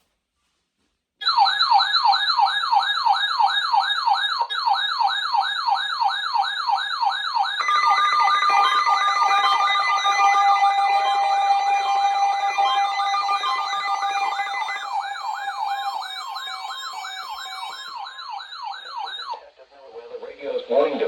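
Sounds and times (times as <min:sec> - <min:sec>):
electronic siren wail: 0:01.2 - 0:19.6
steady electronic tones: 0:07.6 - 0:19.3.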